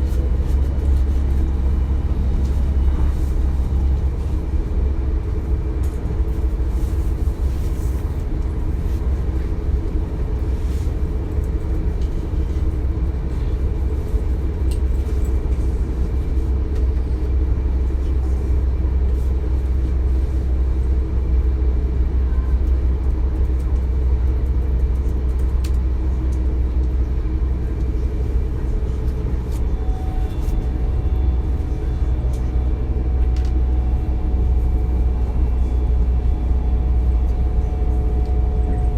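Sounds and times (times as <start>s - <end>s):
low rumble of train wheels: 0.0s - 38.9s.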